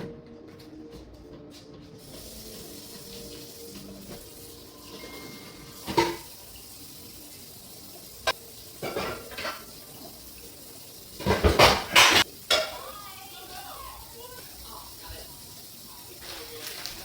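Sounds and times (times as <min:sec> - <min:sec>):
kitchenware clattering: 0:04.9 - 0:06.4, 0:08.2 - 0:10.1, 0:11.2 - 0:12.9.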